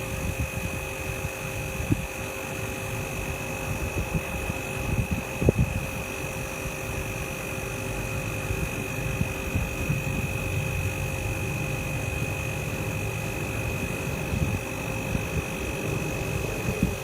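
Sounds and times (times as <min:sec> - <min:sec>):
machine hum with low rumble: 0:00.0 - 0:17.0.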